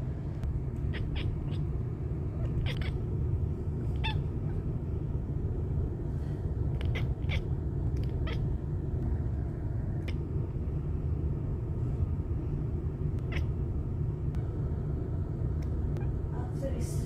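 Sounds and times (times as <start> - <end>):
steady low rumble: 0.0 - 17.0
cat chirping: 0.8 - 3.2, 3.8 - 4.7, 6.7 - 8.6, 13.2 - 13.6.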